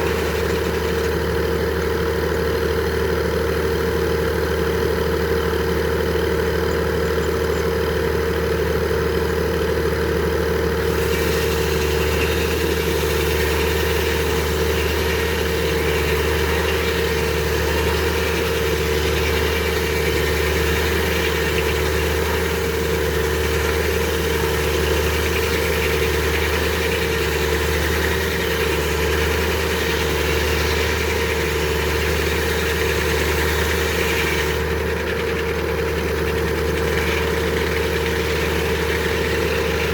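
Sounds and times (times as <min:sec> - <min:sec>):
engine hum: 0:00.0 - 0:39.9
sawmill whine: 0:00.0 - 0:39.9.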